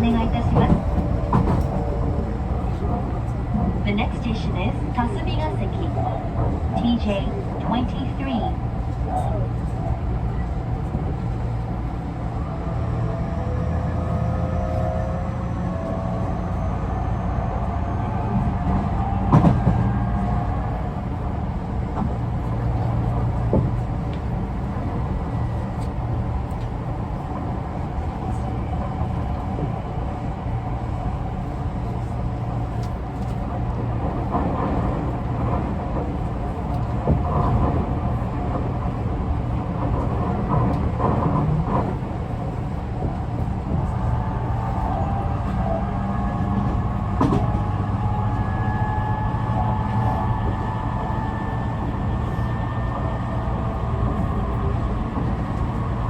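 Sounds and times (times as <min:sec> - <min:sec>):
train wheels rumbling on rail: 0:00.0 - 0:56.0.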